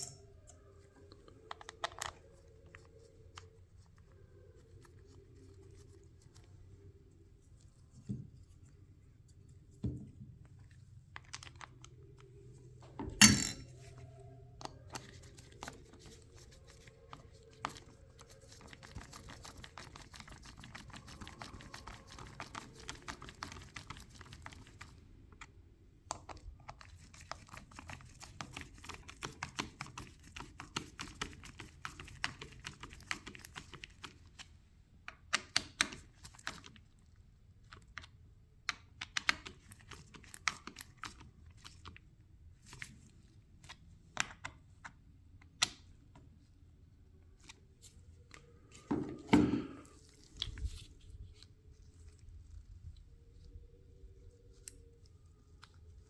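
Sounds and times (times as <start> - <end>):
metal tools clicking and tapping: 0.0 - 0.7, 13.1 - 13.8.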